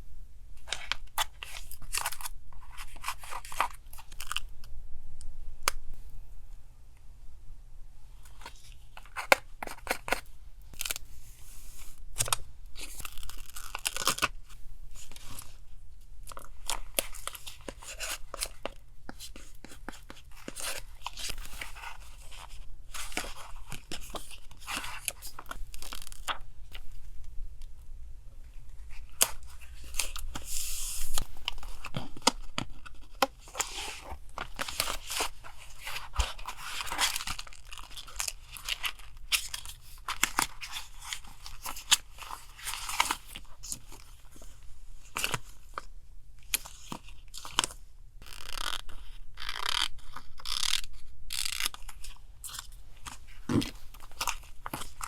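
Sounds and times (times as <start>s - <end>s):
paper rustling and crinkling: 16.3s - 26.4s, 28.7s - 55.0s
paper tearing: 49.4s - 51.9s.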